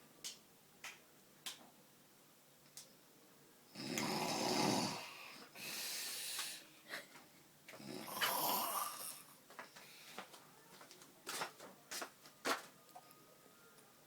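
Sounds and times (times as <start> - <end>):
man snoring loudly: 3.8 - 5.8, 7.8 - 9.2.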